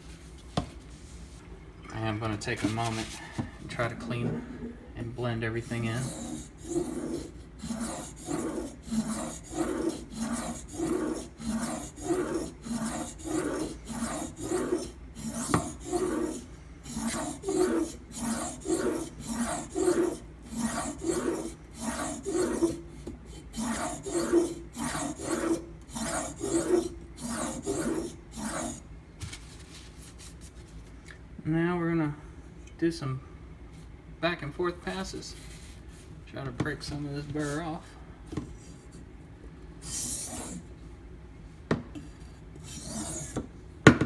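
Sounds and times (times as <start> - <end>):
knife grinding on whetstone: 5.6 - 28.9, 39.8 - 40.7, 42.6 - 43.4.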